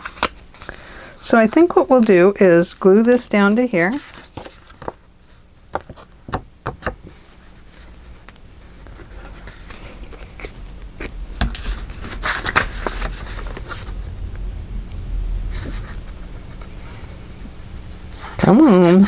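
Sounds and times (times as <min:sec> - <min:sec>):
paper rustling and scraping: 0:00.0 - 0:06.1, 0:07.0 - 0:14.1, 0:15.5 - 0:19.0.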